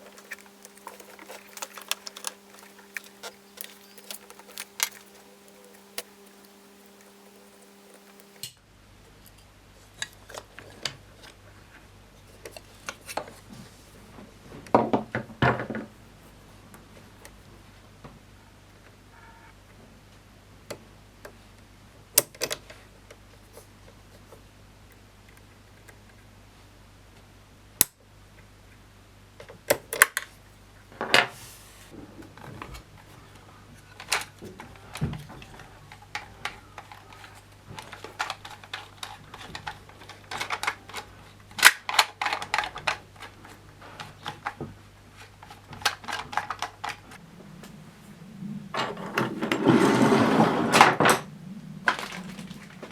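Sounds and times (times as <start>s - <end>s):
tools and parts clattering: 0.0s - 8.5s, 34.0s - 44.6s, 48.7s - 51.3s
faint low hum: 0.0s - 52.9s.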